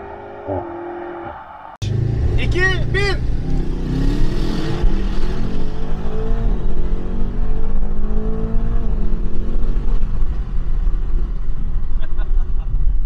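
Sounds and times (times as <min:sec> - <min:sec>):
car engine accelerating: 0:00.0 - 0:12.2.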